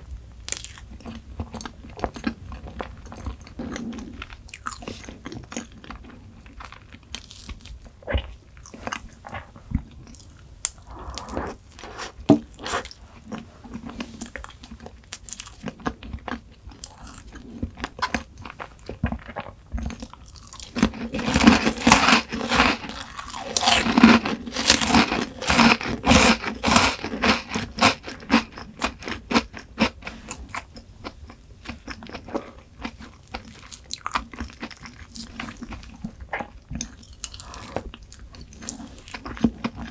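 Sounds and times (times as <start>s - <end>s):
person chewing crunchy food: 0.5s - 39.9s.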